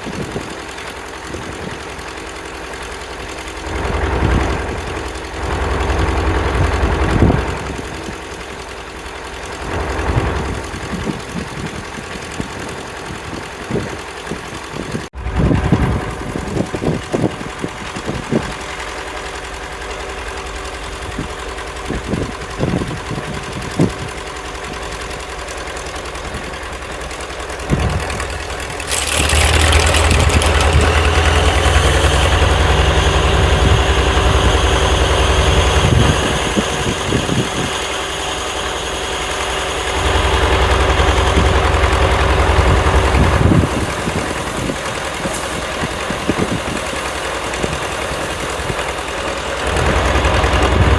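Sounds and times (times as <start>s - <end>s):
engine idling: 0.0s - 50.9s
high steady whine: 27.7s - 50.9s.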